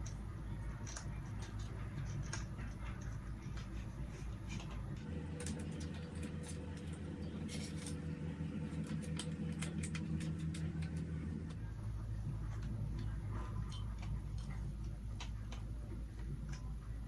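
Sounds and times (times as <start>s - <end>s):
steady low hum: 0.0s - 15.2s.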